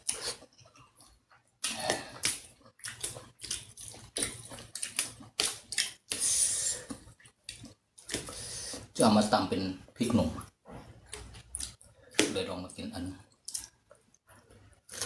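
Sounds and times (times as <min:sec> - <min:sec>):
chewing crisp food: 0:00.0 - 0:08.9, 0:11.0 - 0:11.9, 0:13.3 - 0:15.0.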